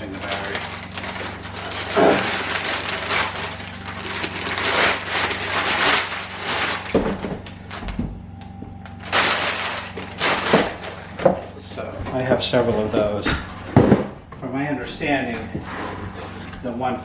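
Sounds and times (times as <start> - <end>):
packaging crinkling and scraping: 0.0 - 8.0, 8.8 - 13.6.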